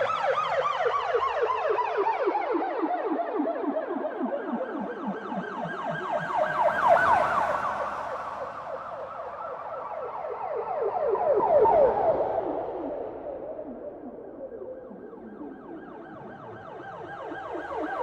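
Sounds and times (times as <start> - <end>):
police siren yelping: 8.7 - 18.0.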